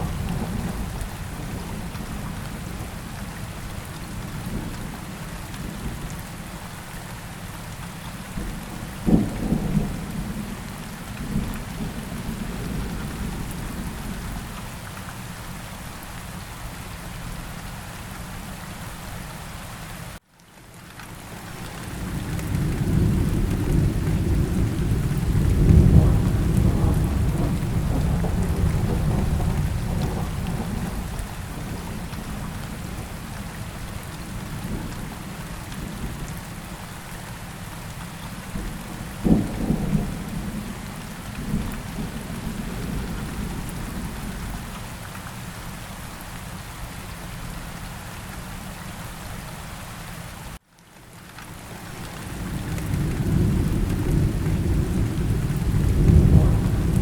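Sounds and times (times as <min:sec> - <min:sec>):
steady rain: 0:00.0 - 0:57.0
thunder rolling: 0:21.9 - 0:32.1, 0:52.1 - 0:57.0
thunder clap: 0:22.0 - 0:31.2, 0:52.3 - 0:57.0.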